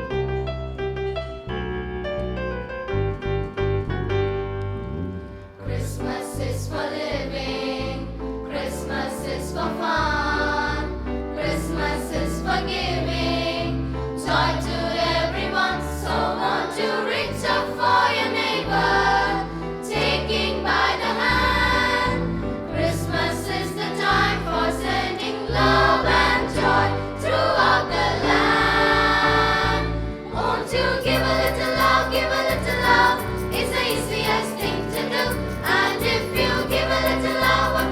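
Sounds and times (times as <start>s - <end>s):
keyboard backing with bass beat: 1.7s - 5.6s, 28.5s - 37.9s
choir singing held notes: 11.4s - 37.9s.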